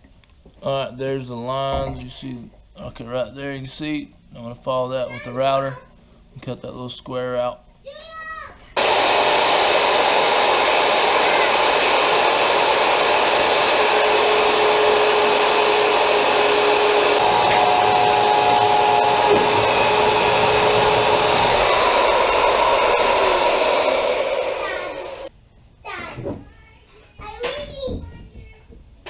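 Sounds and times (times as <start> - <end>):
router cutting plastic: 8.8 - 25.3.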